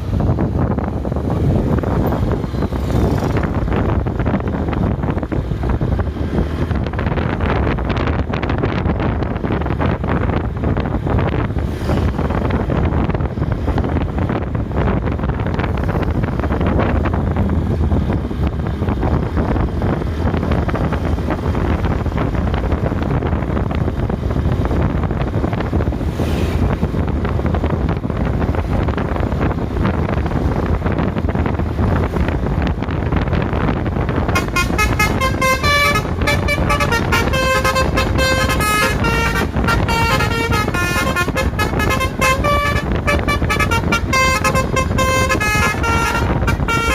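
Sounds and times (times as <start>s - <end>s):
road traffic rumble: 0.0s - 46.9s
multi-tone bus air horn tune: 34.2s - 46.9s.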